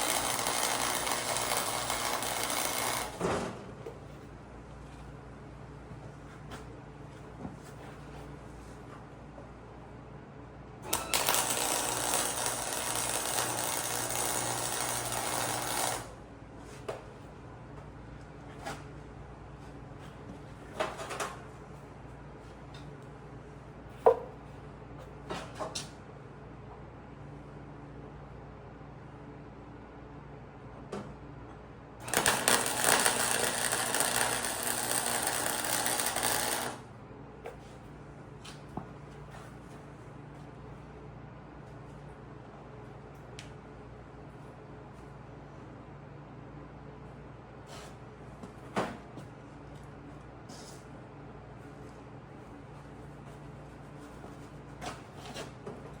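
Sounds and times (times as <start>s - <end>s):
electric welding arc burning: 10.9s - 16.1s, 32.0s - 36.8s.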